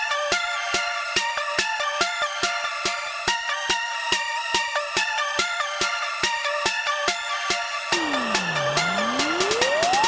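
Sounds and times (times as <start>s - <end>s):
electronic dance music: 8.0s - 10.0s.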